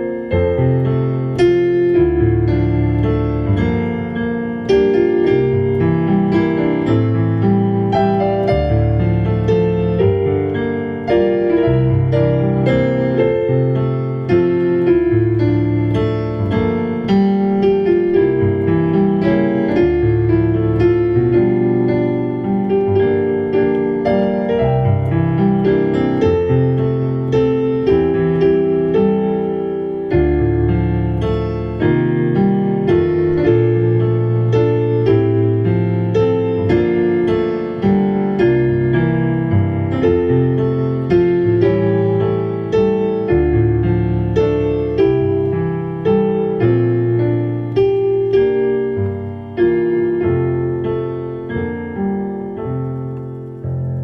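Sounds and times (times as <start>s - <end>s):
slow solo piano melody: 0.0s - 54.0s.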